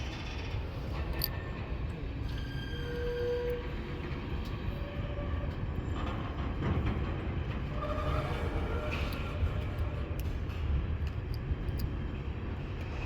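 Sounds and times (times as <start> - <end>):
train wheels rumbling on track: 0.0 - 13.0.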